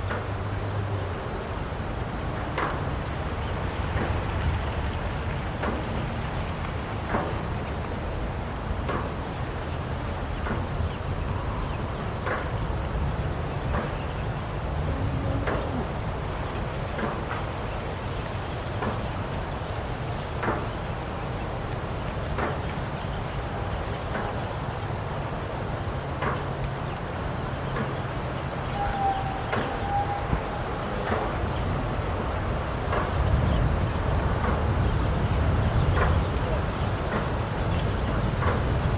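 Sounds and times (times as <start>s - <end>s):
insects chirring: 0.0s - 38.9s
low rumble: 13.1s - 16.8s.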